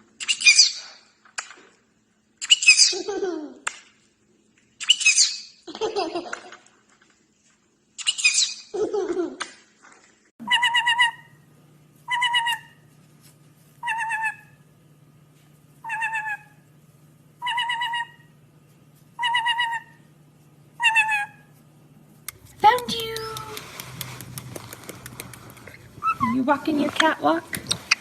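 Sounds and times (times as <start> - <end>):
steady low hum: 10.4 - 28.0
bird warbling call: 25.6 - 26.9.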